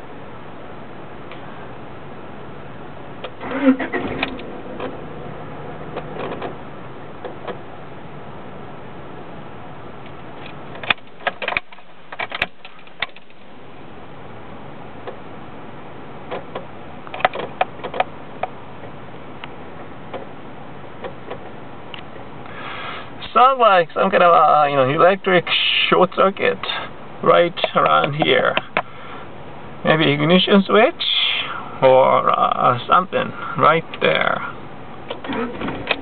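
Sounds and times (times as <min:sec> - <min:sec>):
car engine running: 0:00.0 - 0:36.0
clicks: 0:27.6 - 0:28.9.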